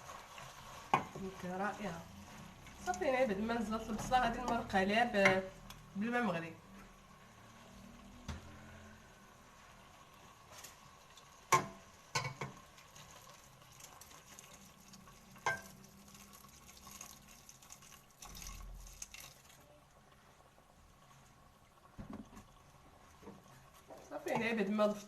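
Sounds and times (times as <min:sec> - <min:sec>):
boiling water pouring into a pot: 0:00.0 - 0:04.4, 0:07.2 - 0:25.0
faint sizzle: 0:00.0 - 0:25.0
pot and utensils clinking: 0:15.4 - 0:15.9.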